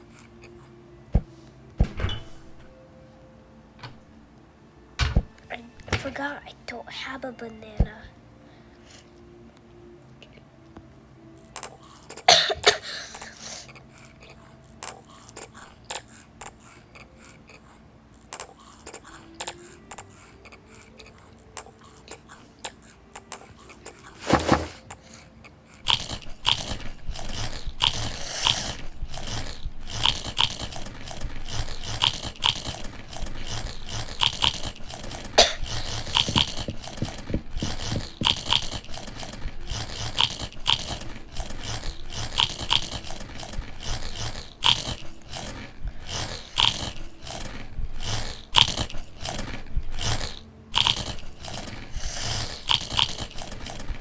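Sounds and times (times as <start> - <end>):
person chewing crunchy food: 13.2 - 54.0.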